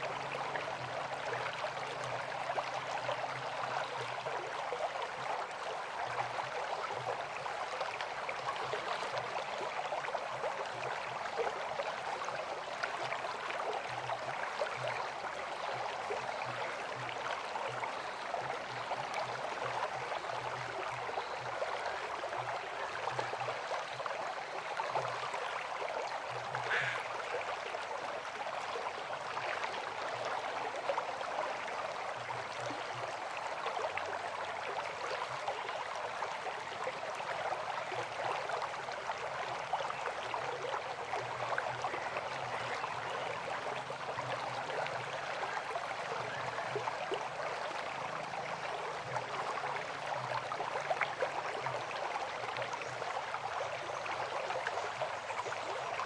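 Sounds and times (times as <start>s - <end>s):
river water flowing: 0.0s - 56.0s.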